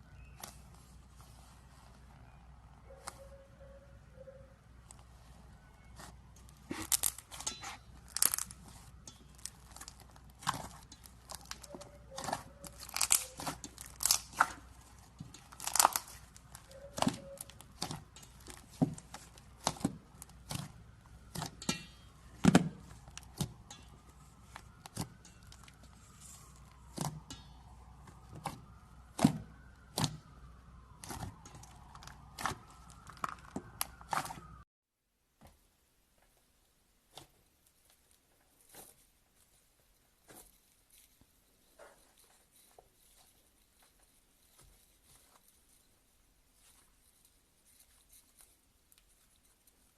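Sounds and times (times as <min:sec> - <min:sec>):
slime clicking and popping: 0:08.0 - 0:14.6, 0:15.5 - 0:20.7.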